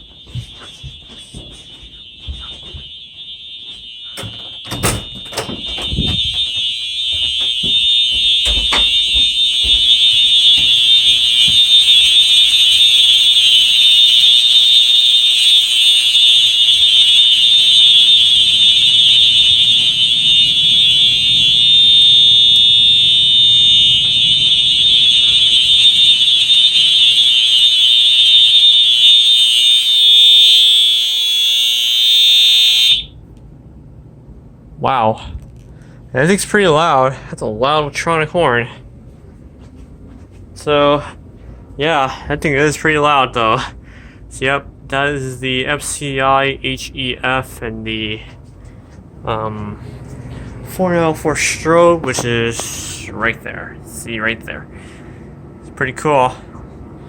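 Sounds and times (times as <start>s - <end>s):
high-pitched fire alarm horn: 0.0s - 33.2s.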